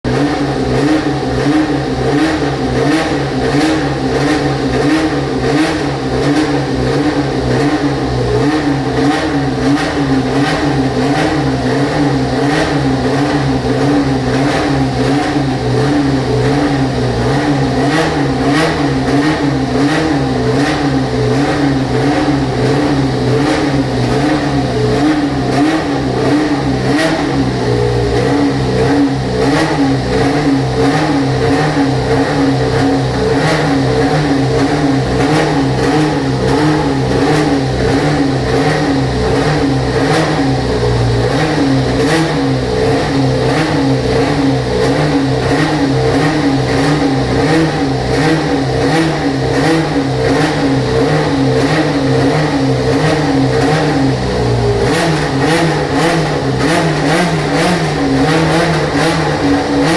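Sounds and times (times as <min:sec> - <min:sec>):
racing car engine idling: 0:00.0 - 0:59.9.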